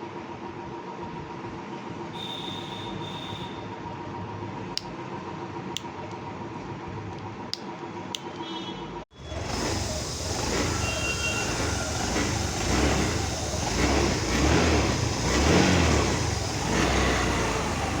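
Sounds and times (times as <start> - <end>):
scooter engine revving: 9.1 - 18.0.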